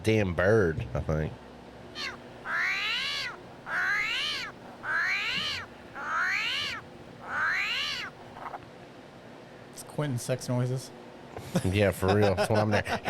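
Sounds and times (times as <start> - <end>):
armadillo calling: 2.0 - 8.6.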